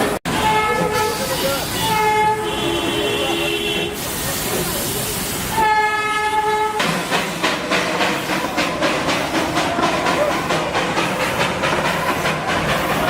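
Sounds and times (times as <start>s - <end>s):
steam locomotive whistle: 0.0s - 4.4s, 5.2s - 7.0s
steam engine chuffing: 0.0s - 13.0s.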